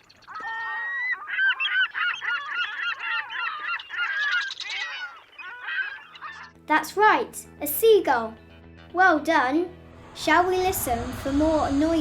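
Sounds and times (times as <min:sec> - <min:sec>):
seagulls calling: 0:00.0 - 0:06.6.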